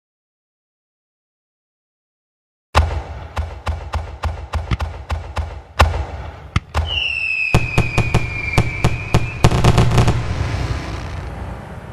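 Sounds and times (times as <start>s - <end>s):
fireworks bangs: 2.8s - 11.4s
firework whistle: 6.8s - 11.3s.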